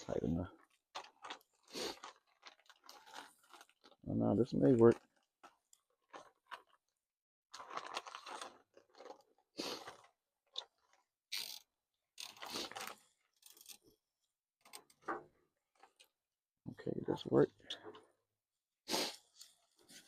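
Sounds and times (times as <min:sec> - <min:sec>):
cable tie ratcheting zips: 0:10.8 - 0:13.9.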